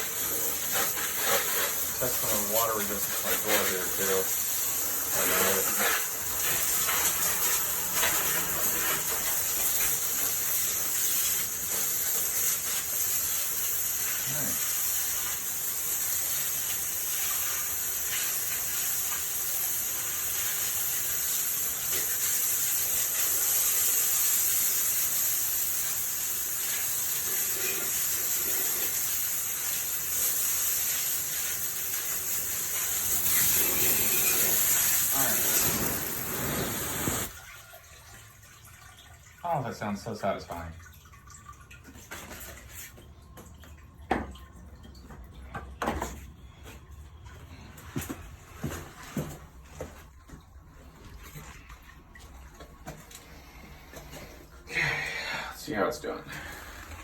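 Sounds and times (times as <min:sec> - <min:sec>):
water spraying from nozzle: 0:00.0 - 0:37.4.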